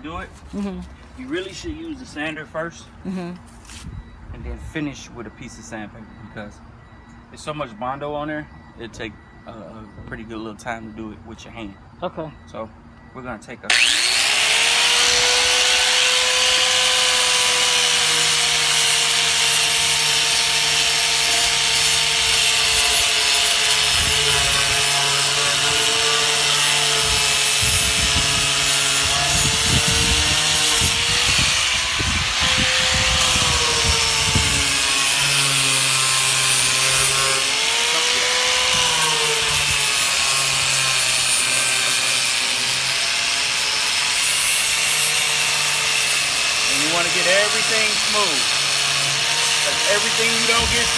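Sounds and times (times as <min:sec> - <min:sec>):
power sander whining and scraping: 0:13.7 - 0:50.9.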